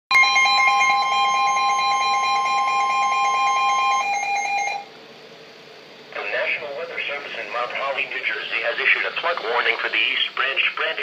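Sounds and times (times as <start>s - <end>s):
two-tone alert tone: 0.1s - 4.9s.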